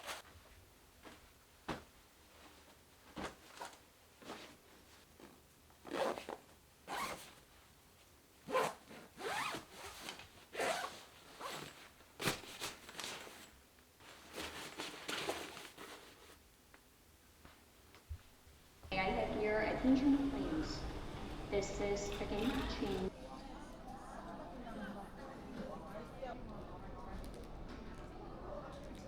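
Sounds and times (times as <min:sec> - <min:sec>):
zippers being pulled: 0:05.9 - 0:07.3, 0:08.5 - 0:12.4
bag rustling: 0:08.5 - 0:16.4.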